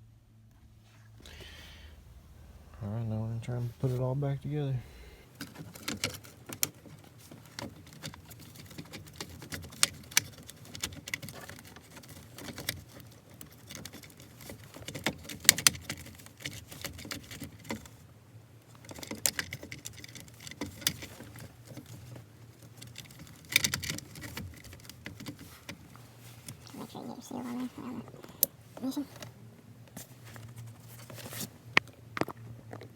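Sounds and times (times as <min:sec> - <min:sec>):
plastic and metal parts clicking: 0:05.3 - 0:17.9, 0:18.8 - 0:26.7.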